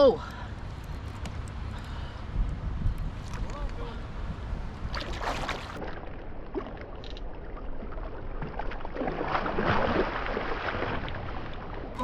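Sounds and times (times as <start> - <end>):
steady low rumble: 0.0 - 8.9
water splashing around kayak: 4.8 - 12.0.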